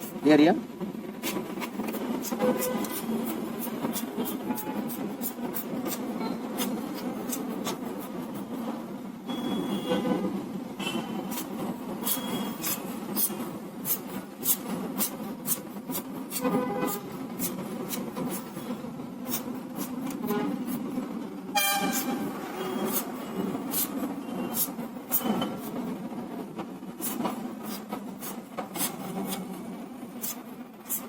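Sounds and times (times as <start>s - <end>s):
vehicle horns honking: 2.4s - 3.0s, 9.3s - 10.2s, 10.8s - 11.2s, 16.4s - 17.1s, 20.2s - 20.7s, 21.5s - 23.0s.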